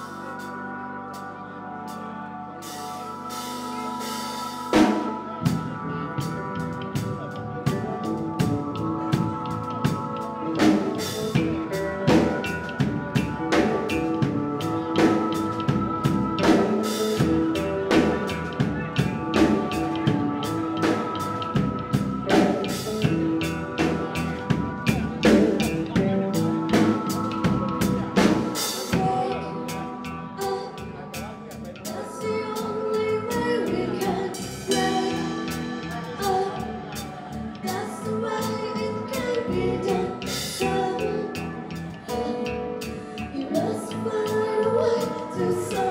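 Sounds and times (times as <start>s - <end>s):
band music: 0.0s - 45.9s
drum kit beat: 3.5s - 30.5s, 34.0s - 38.6s.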